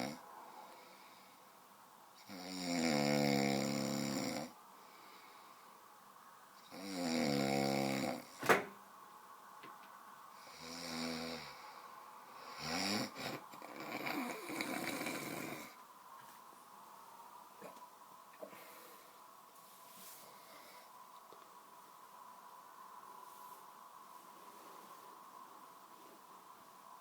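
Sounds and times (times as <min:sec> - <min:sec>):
person snoring loudly: 0:00.0 - 0:00.2, 0:02.2 - 0:04.6, 0:06.7 - 0:08.3, 0:10.4 - 0:11.7, 0:12.4 - 0:15.8.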